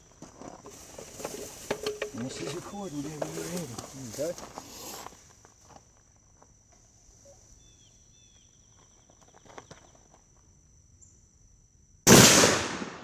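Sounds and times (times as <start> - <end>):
high insect whine: 0.0 - 13.0
loud rifle shot with echo: 12.1 - 13.0.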